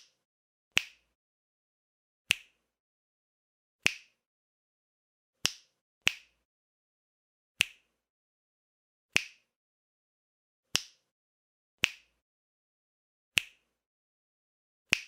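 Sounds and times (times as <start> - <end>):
finger snaps: 0.0 - 1.2, 2.3 - 2.6, 3.8 - 4.2, 5.4 - 6.5, 7.6 - 7.9, 9.1 - 9.5, 10.7 - 11.1, 11.8 - 12.2, 13.4 - 13.7.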